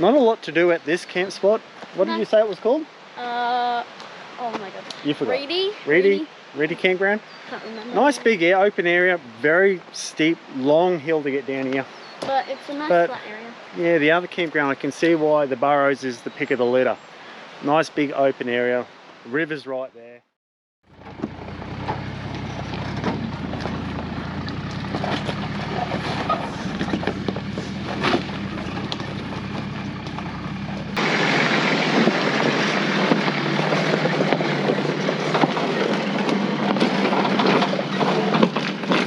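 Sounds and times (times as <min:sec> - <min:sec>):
tyres and wind hiss: 0:00.0 - 0:20.2
engine rumble: 0:20.9 - 0:39.0
knocks and rattles: 0:20.9 - 0:39.0.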